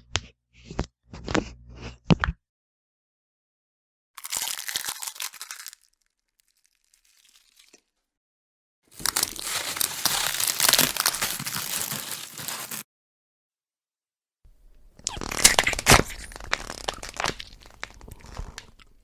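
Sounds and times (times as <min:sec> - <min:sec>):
cartoon crackling noise: 0:15.0 - 0:18.6.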